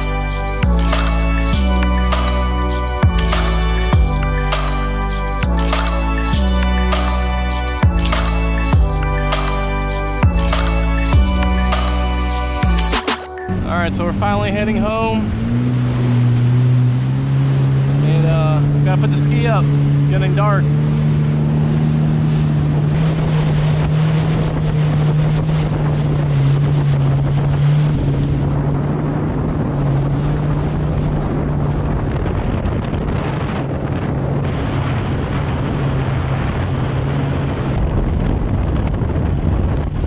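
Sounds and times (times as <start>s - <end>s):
personal watercraft engine hum: 0.0s - 40.0s
rushing water: 0.0s - 40.0s
wind buffeting on microphone: 13.6s - 40.0s.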